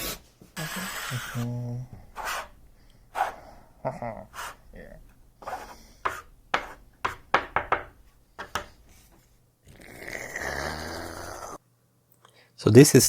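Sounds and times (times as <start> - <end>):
steady rasping noise: 0.0 - 9.2
sharp knocks and clicks: 6.1 - 8.8.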